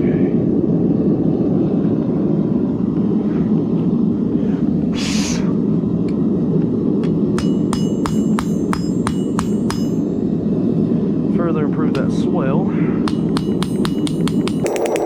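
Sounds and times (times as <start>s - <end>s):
gas forge burner roaring: 0.0s - 14.5s
hammer blows ringing on anvil: 7.4s - 10.1s, 13.0s - 15.0s.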